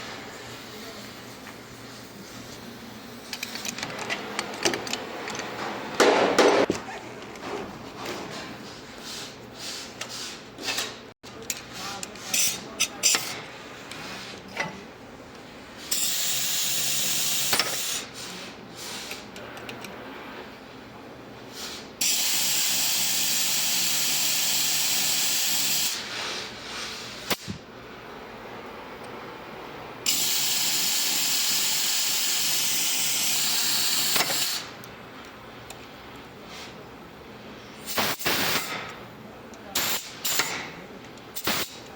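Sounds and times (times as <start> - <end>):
compressed air hissing: 30.1 - 34.7.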